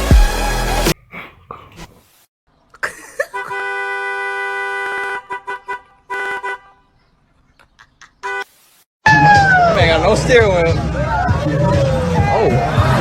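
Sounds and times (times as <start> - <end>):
car horn honking: 3.3 - 7.0, 8.2 - 8.5.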